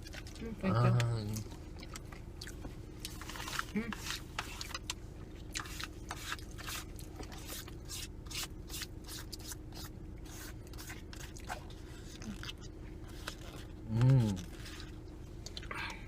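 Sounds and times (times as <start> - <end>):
chewing crunchy fried food: 0.0 - 16.0
faint steady hum: 0.0 - 16.0
small scraping sounds: 3.1 - 5.0, 5.6 - 15.1.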